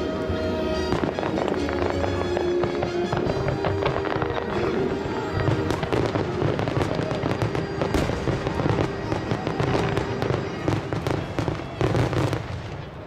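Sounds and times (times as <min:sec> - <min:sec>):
fireworks crackling and popping: 0:00.0 - 0:13.0
music playing: 0:00.0 - 0:13.0
firework bang: 0:05.3 - 0:12.9.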